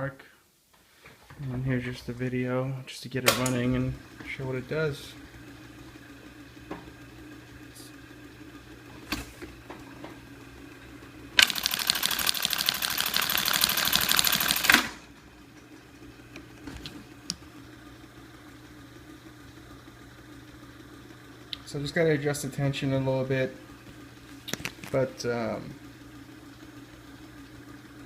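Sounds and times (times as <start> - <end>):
sewing machine stitch rattle: 11.4 - 15.0.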